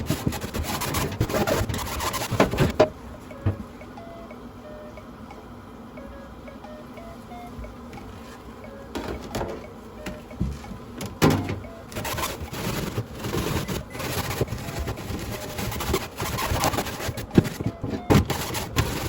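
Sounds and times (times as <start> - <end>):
scraping and rubbing: 0.0 - 3.6, 10.4 - 19.0.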